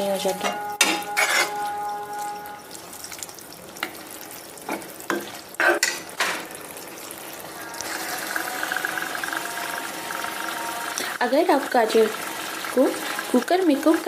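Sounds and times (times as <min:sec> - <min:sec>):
soft sizzle: 0:00.0 - 0:14.0
spoon scraping and knocking pan: 0:00.2 - 0:01.9, 0:04.7 - 0:06.5.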